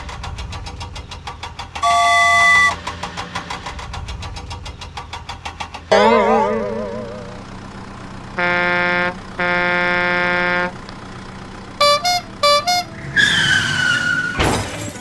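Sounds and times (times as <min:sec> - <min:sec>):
falling whistling tone: 0:01.8 - 0:02.8
low cartoon horn honks: 0:01.8 - 0:02.8, 0:05.9 - 0:13.1.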